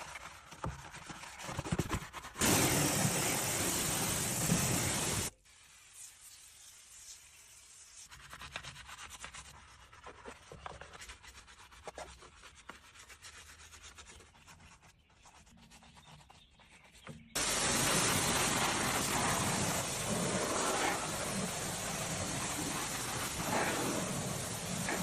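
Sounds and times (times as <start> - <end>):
rubbing strokes on a surface: 4.4 - 25.0
loud steady rushing noise: 17.4 - 25.0.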